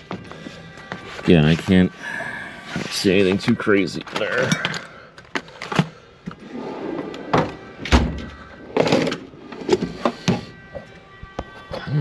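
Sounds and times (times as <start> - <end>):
tools clunking: 4.0 - 10.9
drawer sliding scrape: 6.4 - 10.4.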